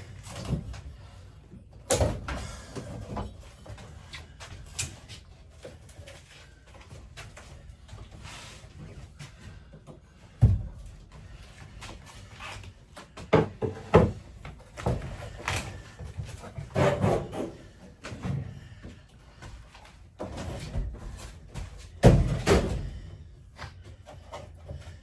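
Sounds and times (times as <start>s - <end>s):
panels knocking and rattling: 13.1s - 23.0s.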